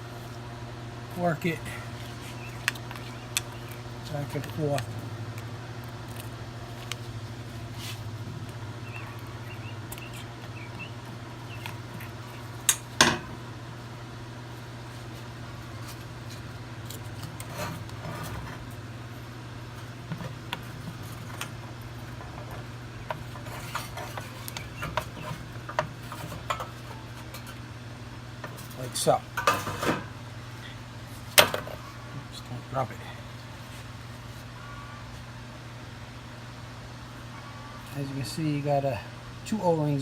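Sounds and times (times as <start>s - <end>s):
steady low hum: 0.0s - 40.0s.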